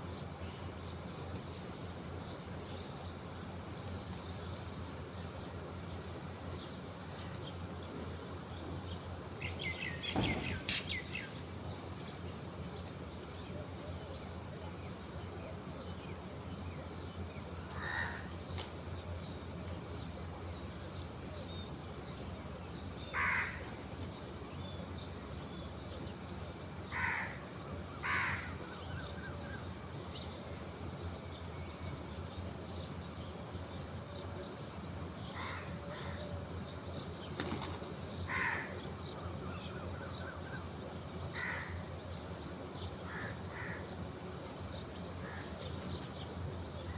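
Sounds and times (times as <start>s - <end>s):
crows cawing: 17.8s - 18.3s, 23.1s - 23.6s, 26.9s - 28.6s, 38.3s - 38.8s, 41.4s - 41.8s, 43.1s - 43.9s.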